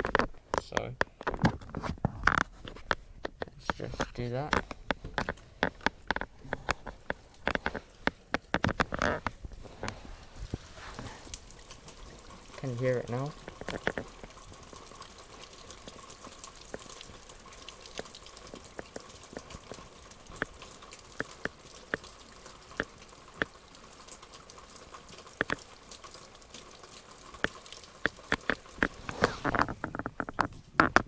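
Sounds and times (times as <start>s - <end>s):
heavy rain hissing: 9.6s - 14.8s.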